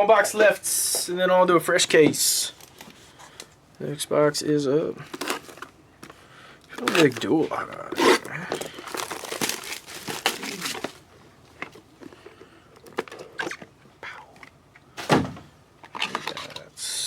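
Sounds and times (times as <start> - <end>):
plastic wrapping crinkling and tearing: 5.1 - 5.8, 6.7 - 12.2, 15.9 - 16.6.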